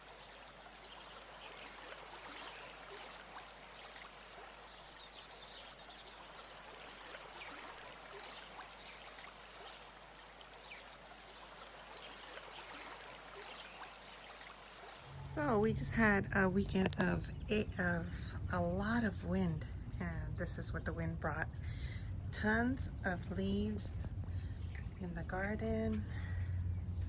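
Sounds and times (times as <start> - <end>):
small crackles: 16.6 - 17.7.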